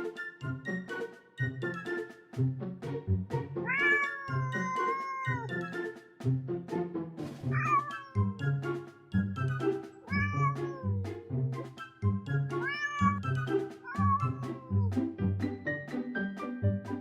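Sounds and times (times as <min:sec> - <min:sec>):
background music with beat: 0:00.0 - 0:17.0
cat meowing: 0:03.6 - 0:05.5, 0:07.5 - 0:08.3, 0:10.0 - 0:11.0, 0:12.6 - 0:13.3, 0:13.9 - 0:14.9.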